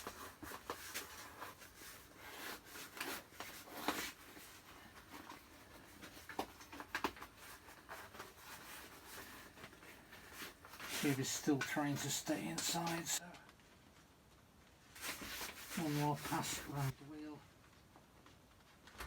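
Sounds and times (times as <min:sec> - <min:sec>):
rubber rubbing against rim: 0:15.0 - 0:16.9.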